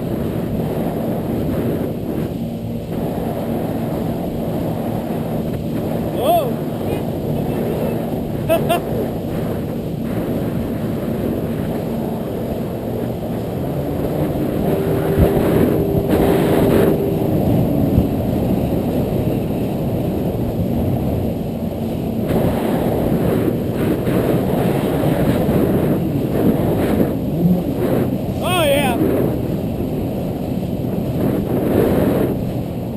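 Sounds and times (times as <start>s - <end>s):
jet ski engine running: 0.0s - 32.9s.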